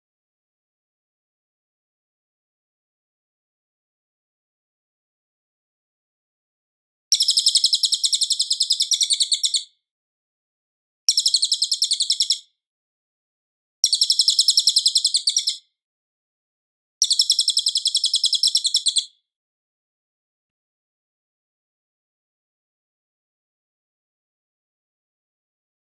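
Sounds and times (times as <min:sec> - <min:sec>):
bird singing high trill: 0:07.1 - 0:09.7, 0:11.1 - 0:12.5, 0:13.8 - 0:15.6, 0:17.0 - 0:19.2.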